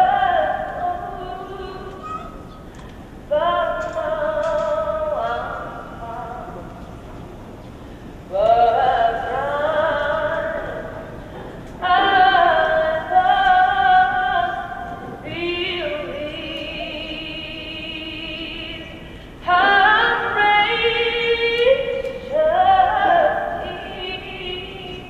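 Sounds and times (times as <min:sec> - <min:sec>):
woman singing operatically: 0:00.0 - 0:02.2, 0:03.3 - 0:06.7, 0:08.3 - 0:11.0, 0:11.8 - 0:25.0.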